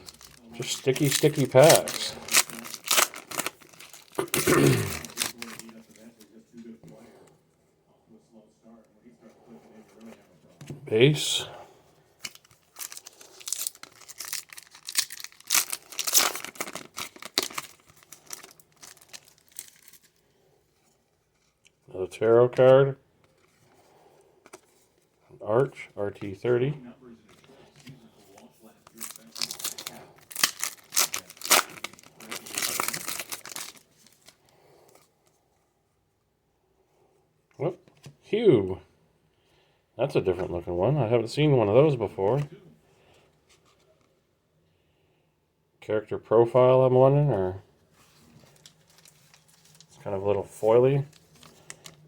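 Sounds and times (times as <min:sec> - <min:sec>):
foil wrappers tearing and crinkling: 0:00.0 - 0:06.1, 0:12.2 - 0:20.2, 0:28.8 - 0:34.4, 0:48.1 - 0:52.0.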